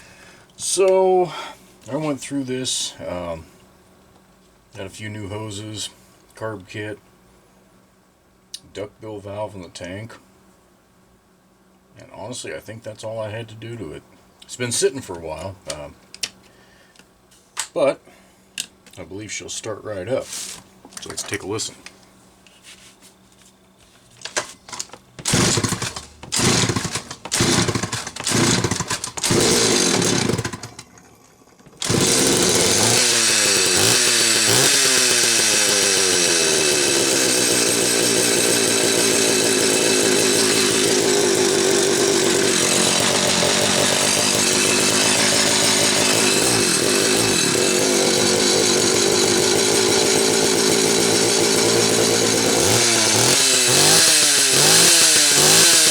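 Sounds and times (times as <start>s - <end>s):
chainsaw starting and running: 24.7s - 55.9s.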